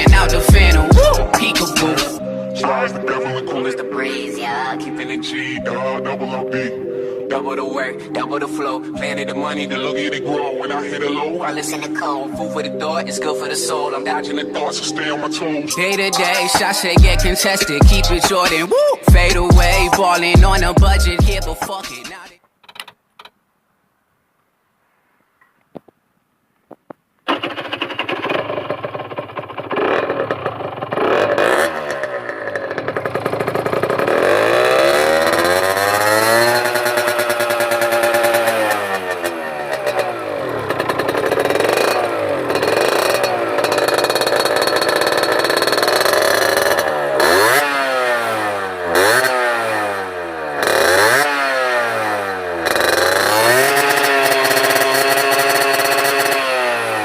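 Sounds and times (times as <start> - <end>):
two-stroke engine revving: 0.0 - 3.8, 15.8 - 22.2, 27.3 - 57.0.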